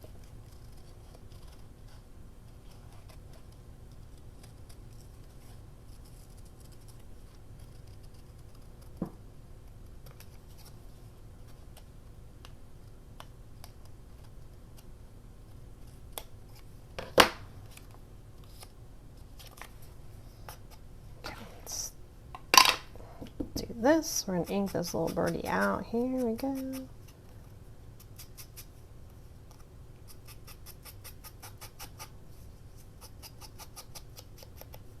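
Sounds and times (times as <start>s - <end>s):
scissors snipping paper: 24.3s - 26.9s, 33.0s - 34.8s.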